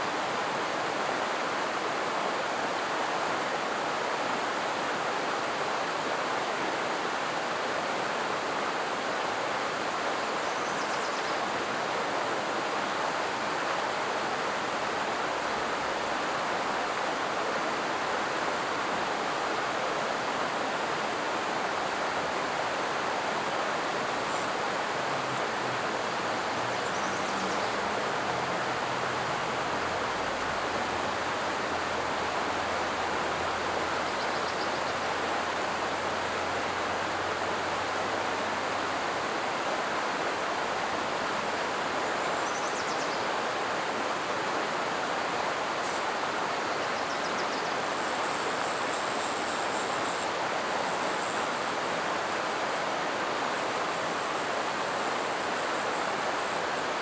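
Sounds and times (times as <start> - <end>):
creek water rushing over riffle: 44.0 - 57.0.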